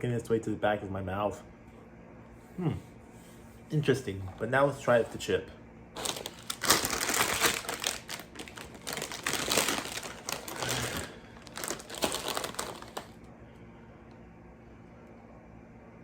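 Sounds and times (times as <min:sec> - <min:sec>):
plastic chip bag crinkling: 0:06.0 - 0:13.2.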